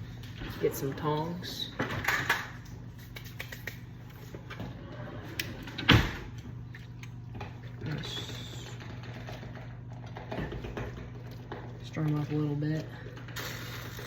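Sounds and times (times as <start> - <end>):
steady low hum: 0.0 - 14.0
kitchen clicks and knocks: 1.8 - 2.7.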